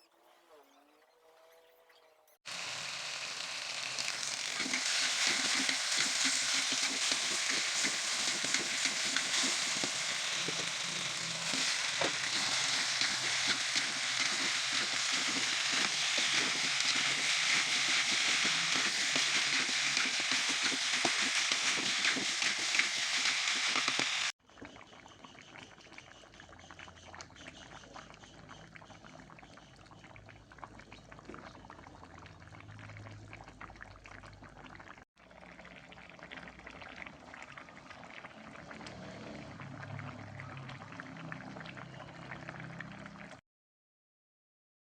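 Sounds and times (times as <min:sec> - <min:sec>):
food sizzling in a pan: 0:02.5 - 0:24.4
food bubbling and crackling: 0:02.5 - 0:43.4.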